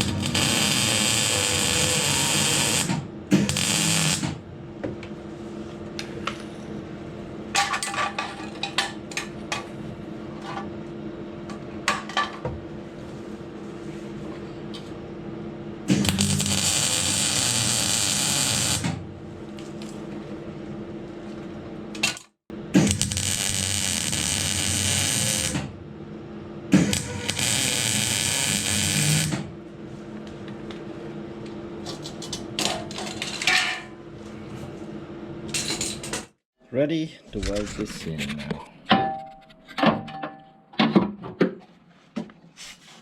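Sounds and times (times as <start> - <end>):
welder arc crackling: 0.0 - 2.9, 3.5 - 4.2, 15.9 - 19.0, 22.9 - 25.7, 26.9 - 29.4.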